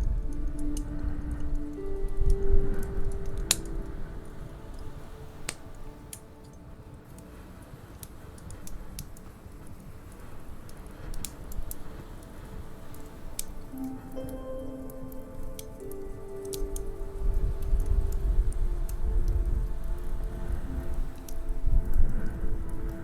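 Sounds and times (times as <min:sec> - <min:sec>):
low rumble of burning logs: 0:00.0 - 0:23.0
wood fire crackling: 0:00.0 - 0:23.0.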